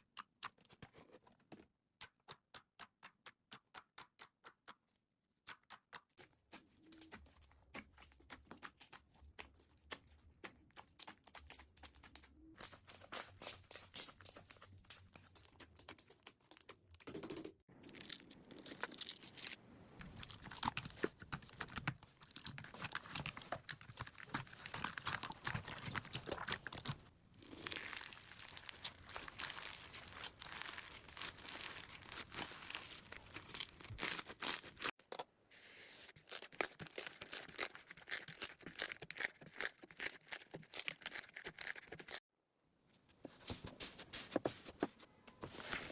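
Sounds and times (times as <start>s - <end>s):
slime crackling and crunching: 17.7s - 35.0s.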